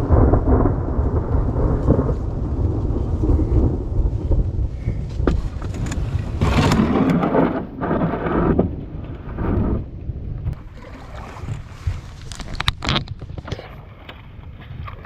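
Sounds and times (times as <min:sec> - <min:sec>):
rain falling: 0:00.0 - 0:10.6
thunder rumbling: 0:00.0 - 0:13.4.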